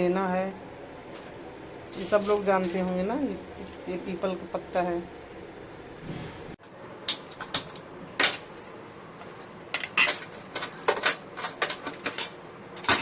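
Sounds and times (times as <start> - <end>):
kitchen utensils clattering: 1.1 - 4.0, 7.1 - 8.8, 9.7 - 13.0.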